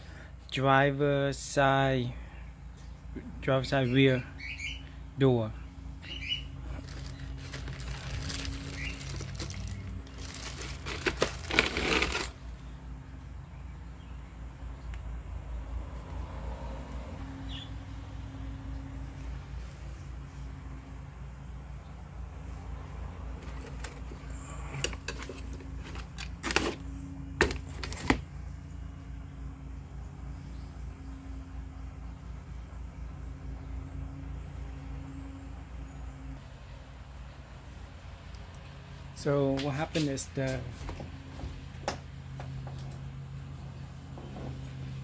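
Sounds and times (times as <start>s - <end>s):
steady low hum: 0.0s - 45.0s
packaging rustling and crinkling: 6.7s - 12.4s, 23.4s - 28.3s.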